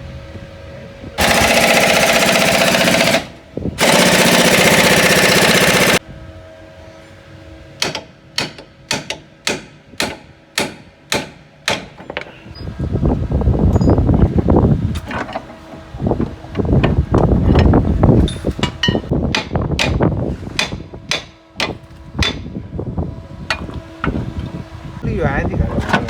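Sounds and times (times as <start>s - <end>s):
pneumatic impact wrench hammering: 1.2s - 6.0s
sharp metal knocks: 7.8s - 12.3s, 17.6s - 20.0s, 20.6s - 22.5s.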